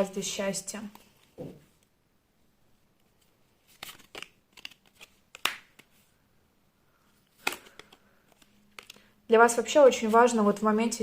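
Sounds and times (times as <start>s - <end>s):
cards rustling and flicking: 3.0s - 6.1s, 7.1s - 9.1s.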